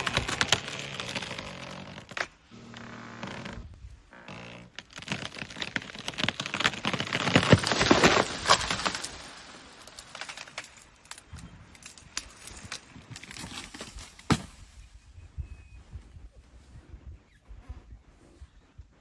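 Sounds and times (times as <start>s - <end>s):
plant stalks snapping and crackling: 0.0s - 2.3s, 4.4s - 14.6s.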